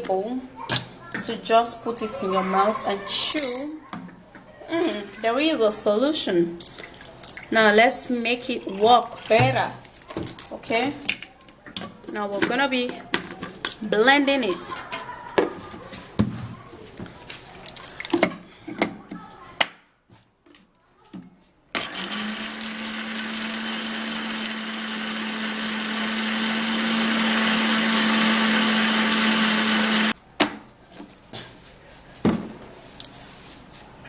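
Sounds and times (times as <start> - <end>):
electric blender grinding: 21.8 - 30.2.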